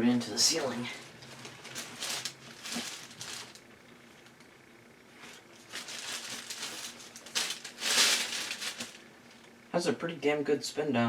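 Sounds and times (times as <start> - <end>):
packaging and hardware rustling: 0.5 - 3.6, 5.2 - 9.1.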